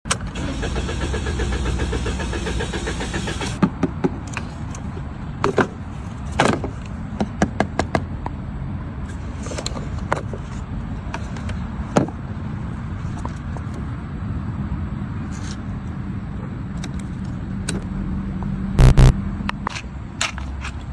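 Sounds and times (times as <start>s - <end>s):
pitched buzzing: 18.8s - 19.1s
steady low hum: 18.8s - 19.2s.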